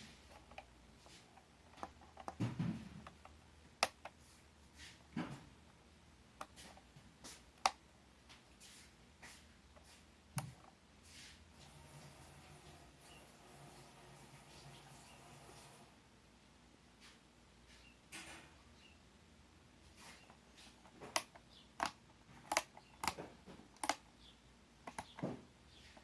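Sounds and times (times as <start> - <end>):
sharp clicks: 21.0 - 24.1.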